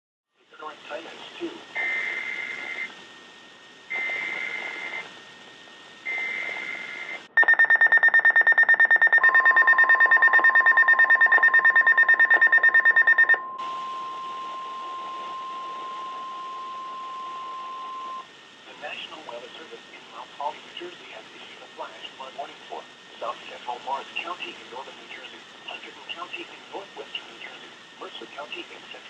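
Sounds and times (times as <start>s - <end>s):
steady warning alarm tone: 1.7s - 5.2s, 6.0s - 18.4s
alarm beeping rapidly: 6.1s - 18.2s.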